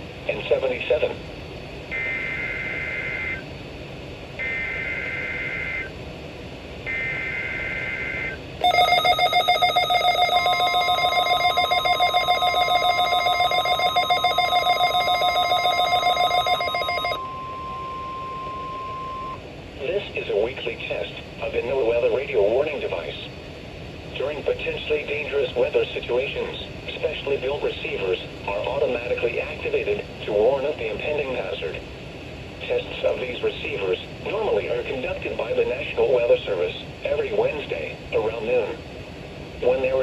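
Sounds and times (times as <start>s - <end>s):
pulsing electronic alarm: 1.9s - 3.4s, 4.4s - 5.9s, 6.9s - 19.4s
steady warning alarm tone: 1.9s - 3.4s, 4.4s - 5.9s, 6.9s - 19.4s
digital header data bursts: 7.0s - 17.2s.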